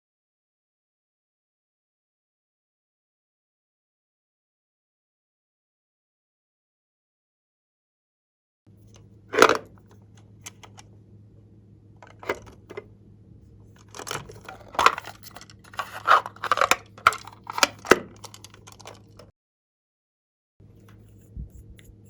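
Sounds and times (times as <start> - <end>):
faint steady hum: 8.7 - 19.3, 20.6 - 22.0
plastic crinkling: 13.8 - 19.2.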